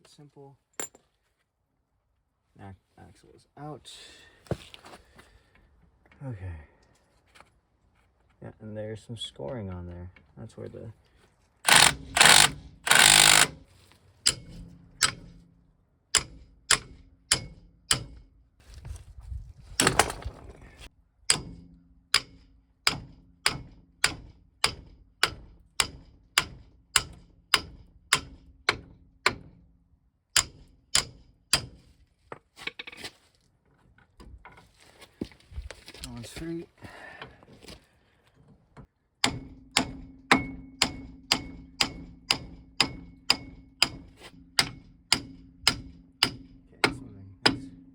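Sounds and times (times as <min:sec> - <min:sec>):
loud harsh bursts: 0:11.7 - 0:13.5
ratchet wrench clicking: 0:11.7 - 0:13.6.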